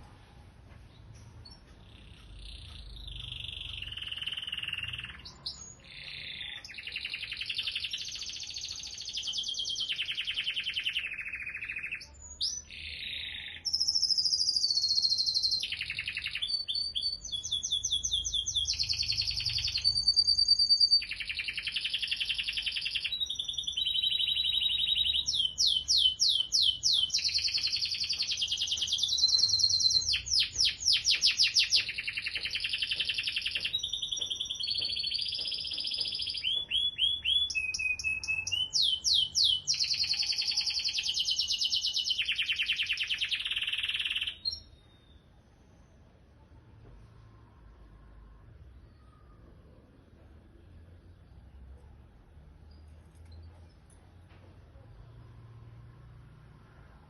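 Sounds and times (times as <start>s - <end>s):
canary singing: 1.2s - 45.2s.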